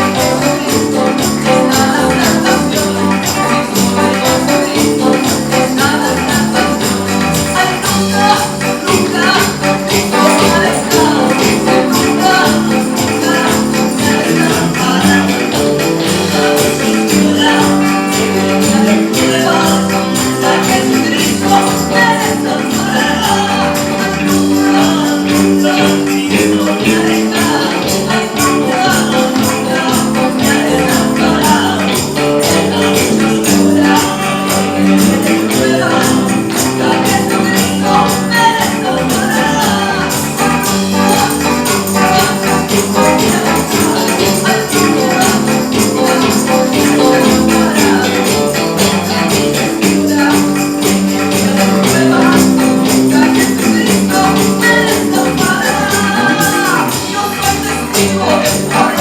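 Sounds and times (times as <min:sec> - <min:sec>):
band playing worship song: 0:00.0 - 0:59.0.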